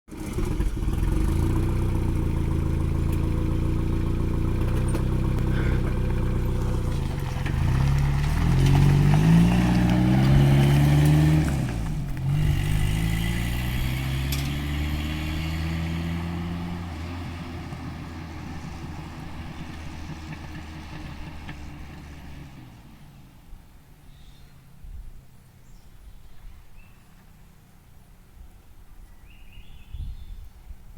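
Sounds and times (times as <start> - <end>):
turbocharged engine revving: 0.1 - 23.1.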